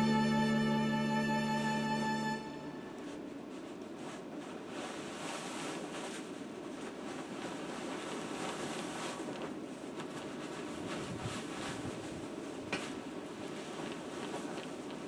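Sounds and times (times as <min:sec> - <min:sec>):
string music: 0:00.0 - 0:03.2.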